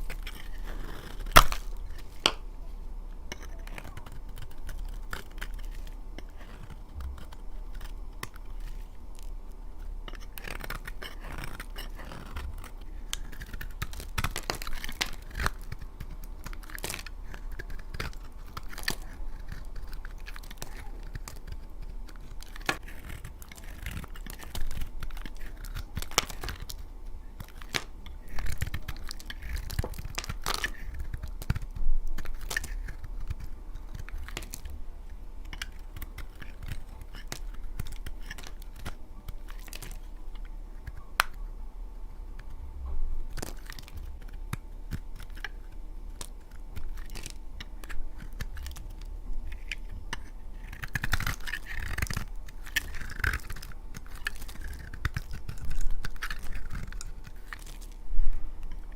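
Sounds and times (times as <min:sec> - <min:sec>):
knife cutting dry soap: 0:03.3 - 0:34.7.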